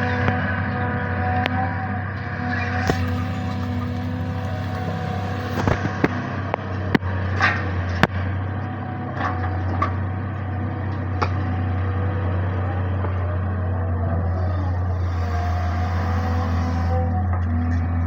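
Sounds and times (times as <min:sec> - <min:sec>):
excavator engine running: 0:00.0 - 0:18.0
sharp cracks and knocks of digging: 0:02.8 - 0:06.2.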